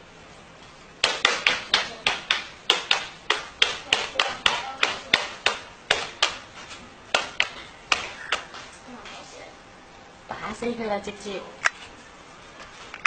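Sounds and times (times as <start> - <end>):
sharp taps: 1.0 - 6.4, 7.1 - 8.7.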